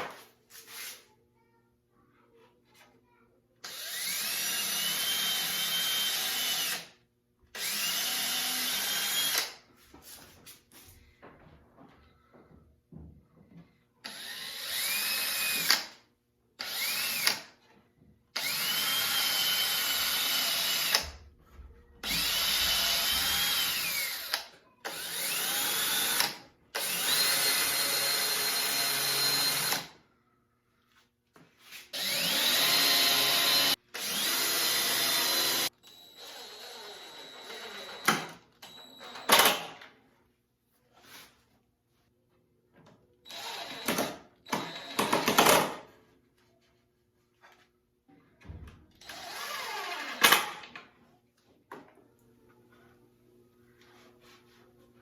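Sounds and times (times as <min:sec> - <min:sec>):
electric drill whining: 0:03.7 - 0:06.9, 0:07.6 - 0:09.6, 0:14.0 - 0:16.0, 0:16.6 - 0:17.5, 0:18.4 - 0:21.2, 0:22.0 - 0:29.9, 0:32.0 - 0:39.4, 0:43.3 - 0:45.4, 0:49.0 - 0:50.6.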